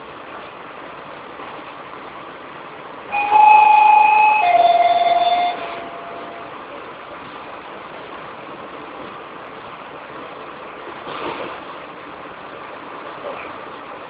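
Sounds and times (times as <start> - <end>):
train noise: 0.0 - 14.0
two-note falling chime: 3.2 - 6.5.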